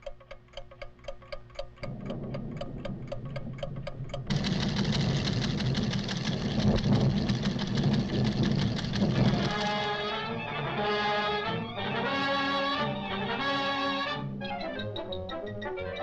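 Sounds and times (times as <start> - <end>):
fast even ticking: 0.0 - 10.0
low rumble into loud roar: 1.9 - 9.9.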